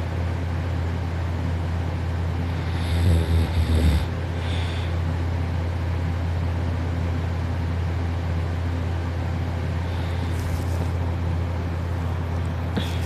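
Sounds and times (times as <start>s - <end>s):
steady low hum: 0.0s - 13.0s
person snoring: 2.5s - 5.0s
faint breathing: 4.0s - 5.1s, 9.8s - 10.9s, 12.7s - 13.0s.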